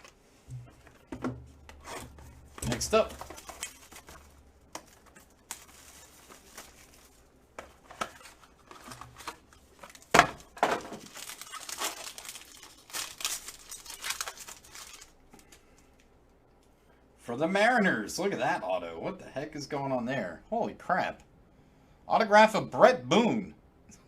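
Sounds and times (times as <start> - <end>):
wrapper rustling: 0.0 - 15.9
wrapper tearing and crinkling: 1.8 - 15.6.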